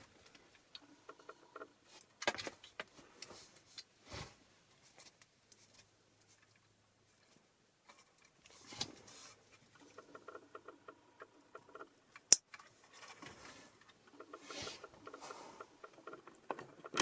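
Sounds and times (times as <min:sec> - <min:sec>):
hands clicking and rustling wires: 0:04.8 - 0:17.0.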